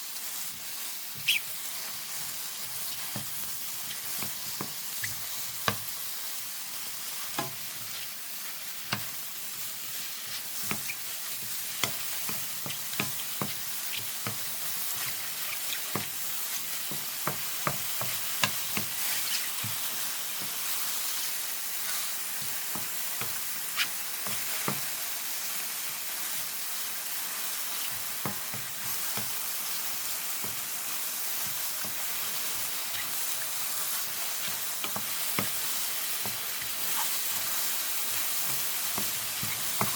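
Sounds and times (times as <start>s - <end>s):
mushrooms sizzling in a pan: 0.0s - 39.9s.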